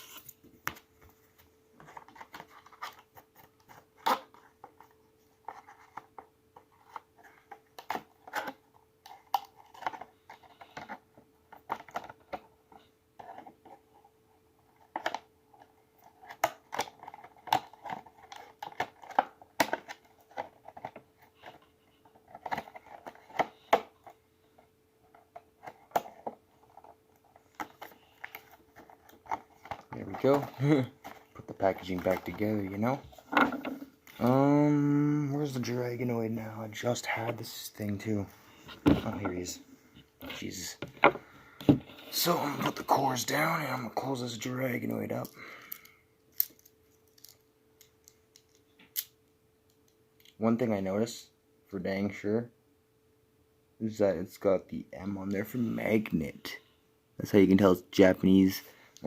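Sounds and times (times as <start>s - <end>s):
plastic and cardboard crinkling: 0.0s - 14.0s, 14.7s - 24.2s, 25.1s - 34.4s
faint steady hum: 0.0s - 59.0s.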